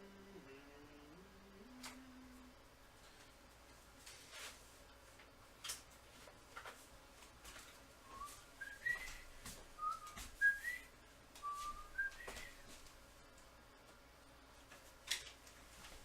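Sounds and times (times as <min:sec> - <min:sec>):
person whistling a tune: 0:08.1 - 0:12.6.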